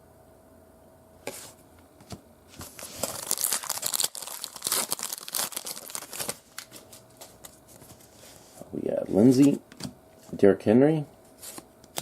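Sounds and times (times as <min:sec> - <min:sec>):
foil wrapper tearing and crinkling: 0:02.6 - 0:07.0.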